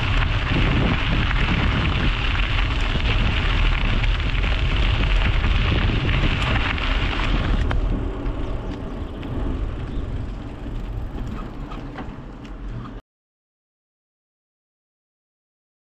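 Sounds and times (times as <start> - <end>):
bicycle tyre noise: 0.0 - 13.0
wind rushing over microphone: 0.0 - 13.0.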